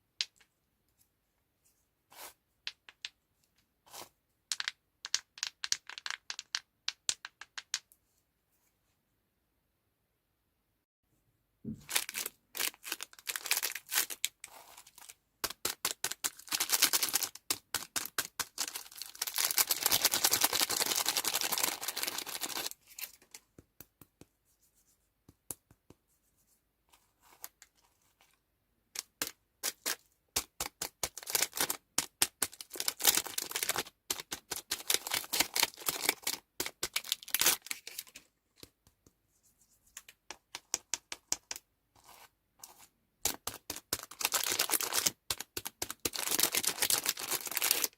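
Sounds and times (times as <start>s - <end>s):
candy wrappers crinkling and tearing: 11.9s - 23.1s, 29.0s - 38.2s, 43.3s - 47.9s.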